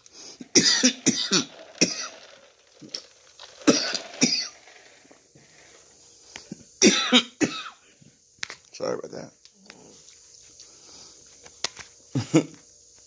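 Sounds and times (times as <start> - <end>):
man coughing: 0.5 - 2.1, 6.8 - 7.8.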